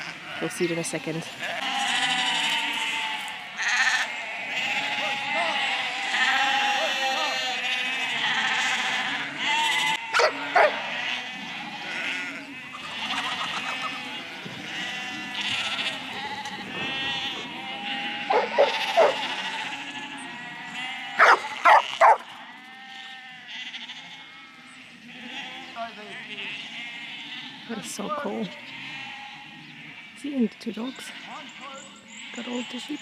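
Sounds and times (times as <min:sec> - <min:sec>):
sheep bleating: 0:00.0 - 0:33.0
dog barking: 0:10.2 - 0:10.8, 0:18.3 - 0:19.3, 0:21.2 - 0:22.3.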